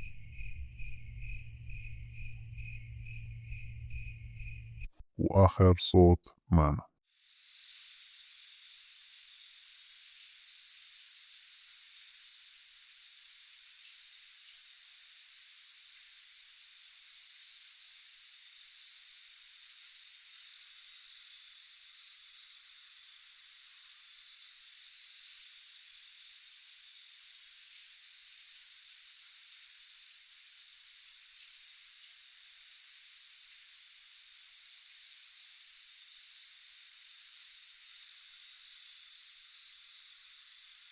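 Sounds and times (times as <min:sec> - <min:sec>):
crickets chirping: 0:00.0 - 0:04.9.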